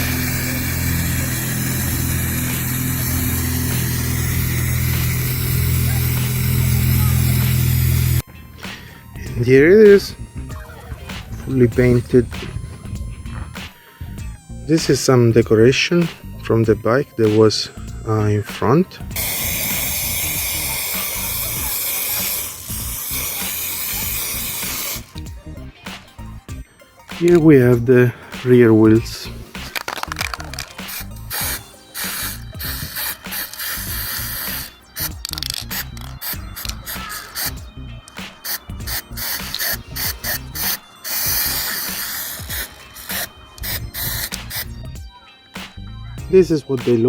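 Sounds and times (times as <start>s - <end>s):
spray paint can hissing: 0.0s - 14.2s, 19.1s - 25.3s, 28.4s - 44.8s
background music: 0.0s - 47.0s.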